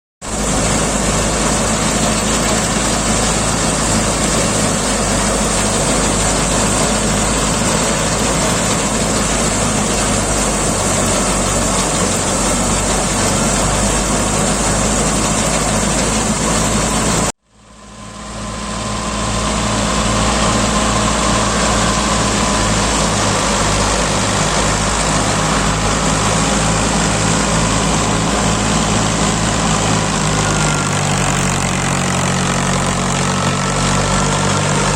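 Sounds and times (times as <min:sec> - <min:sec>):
thresher mechanical drone: 0:00.3 - 0:34.9.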